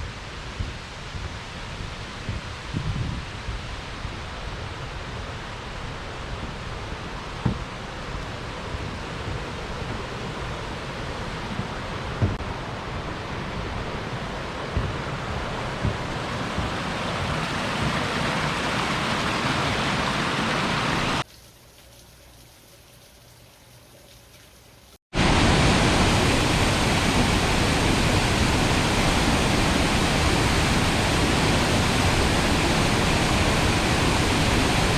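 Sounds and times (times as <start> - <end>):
river and waterfall rushing: 3.3 - 21.3, 25.1 - 34.9.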